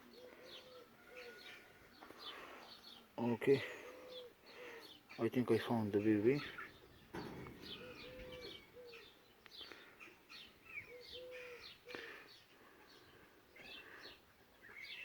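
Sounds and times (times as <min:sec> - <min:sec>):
birds chirping: 0:00.0 - 0:15.0
low cooing: 0:07.5 - 0:09.1.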